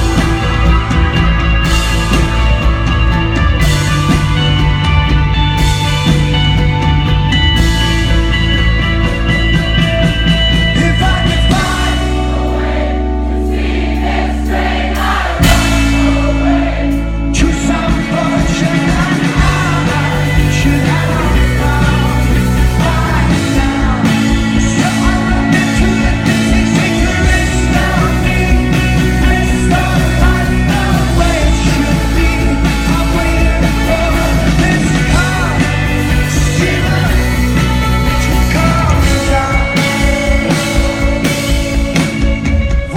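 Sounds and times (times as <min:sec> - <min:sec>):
live rock band playing: 0:00.0 - 0:42.9
person singing: 0:10.5 - 0:13.5, 0:14.4 - 0:42.9.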